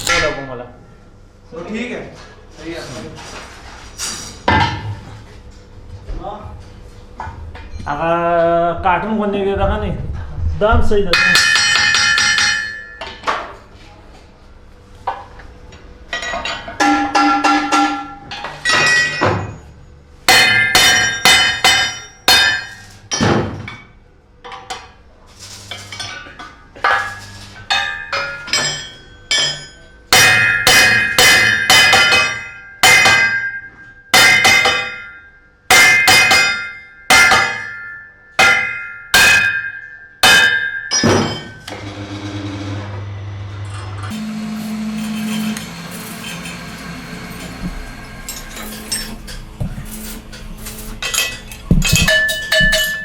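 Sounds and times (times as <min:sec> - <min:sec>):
hammer striking steel rim: 0:11.2 - 0:13.0, 0:16.8 - 0:19.4, 0:20.3 - 0:22.9, 0:29.3 - 0:41.5, 0:51.1 - 0:53.0.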